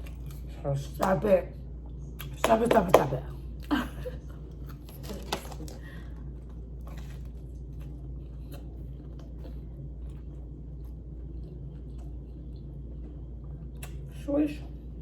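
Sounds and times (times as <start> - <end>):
person chewing food: 0.0 - 0.6, 4.3 - 14.1
steady low hum: 0.0 - 15.0.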